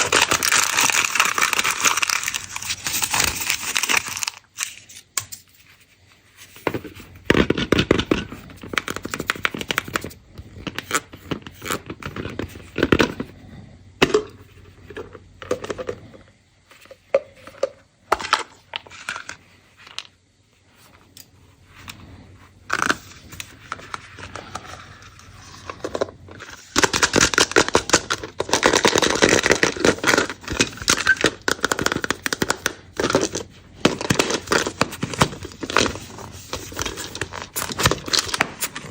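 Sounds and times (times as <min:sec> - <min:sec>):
foil wrappers crinkling and tearing: 0:00.0 - 0:05.5, 0:07.5 - 0:13.1, 0:22.7 - 0:38.9.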